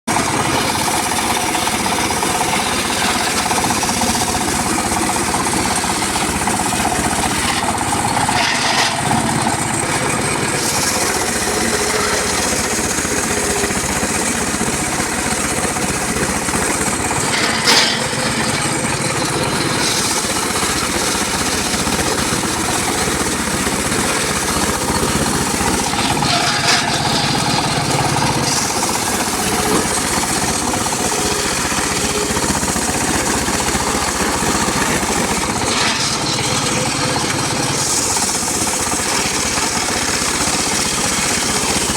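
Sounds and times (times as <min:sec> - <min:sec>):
circular saw cutting wood: 0:00.1 - 0:41.9.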